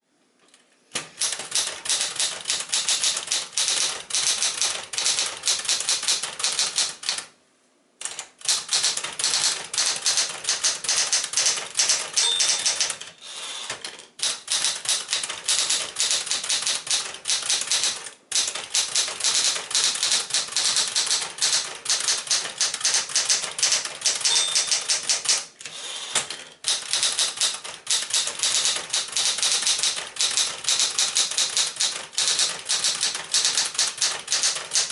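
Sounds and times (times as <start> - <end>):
manual typewriter typing: 1.0 - 7.3, 8.0 - 34.9
typewriter bell ring: 8.5 - 13.0, 14.3 - 26.0, 26.7 - 34.9.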